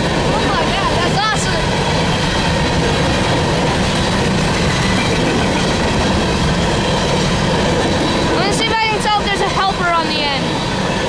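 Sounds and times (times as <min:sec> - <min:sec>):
freight train wheels rumbling: 0:00.0 - 0:11.0.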